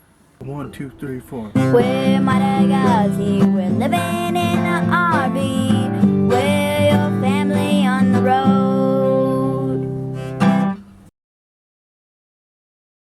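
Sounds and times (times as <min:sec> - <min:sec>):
strummed acoustic guitar: 0:00.4 - 0:11.1
person singing: 0:01.4 - 0:10.0.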